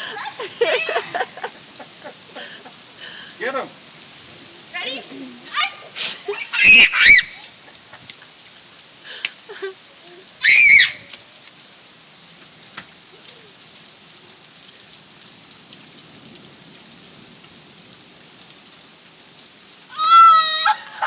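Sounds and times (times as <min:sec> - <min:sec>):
steady rain: 0:00.0 - 0:21.0
child shrieking: 0:05.5 - 0:07.5, 0:10.4 - 0:11.1, 0:19.9 - 0:21.0.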